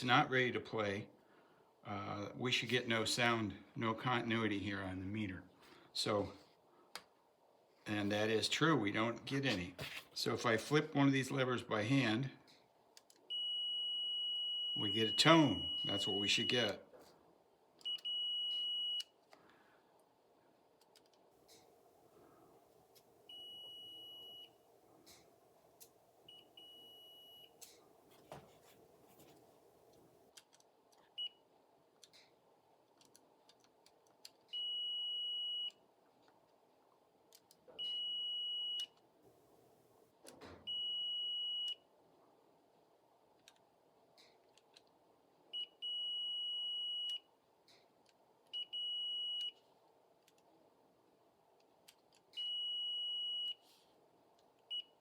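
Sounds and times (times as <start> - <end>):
multimeter continuity beeps: 13.3 - 16.7, 17.8 - 19.1, 23.3 - 24.6, 26.3 - 27.6, 34.5 - 35.8, 37.8 - 39.0, 40.7 - 41.8, 45.6 - 47.3, 48.6 - 49.6, 52.4 - 53.6.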